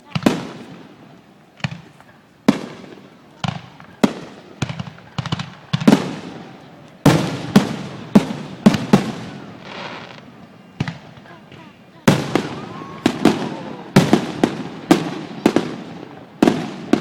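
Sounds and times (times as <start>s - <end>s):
fireworks shells bursting: 7.1s - 15.9s.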